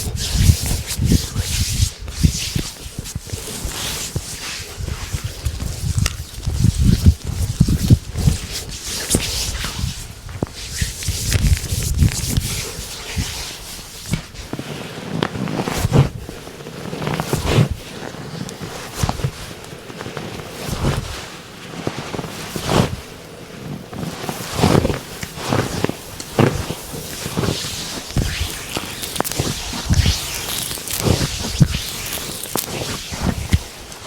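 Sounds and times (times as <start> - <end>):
hands rubbing on skin: 0.0 - 14.5, 24.1 - 34.0.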